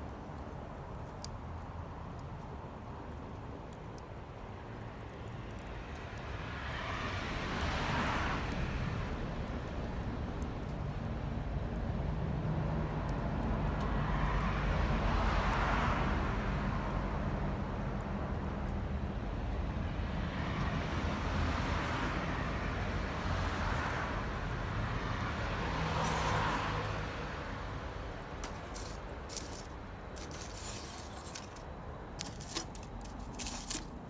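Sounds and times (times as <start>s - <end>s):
low traffic rumble: 7.2s - 34.0s
vehicles passing: 19.1s - 34.0s.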